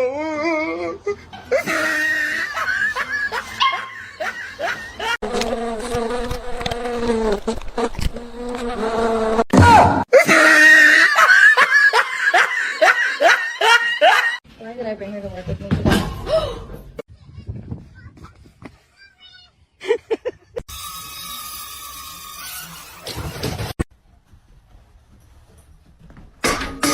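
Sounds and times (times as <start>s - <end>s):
people laughing loudly: 1.6s - 5.2s, 10.2s - 14.4s.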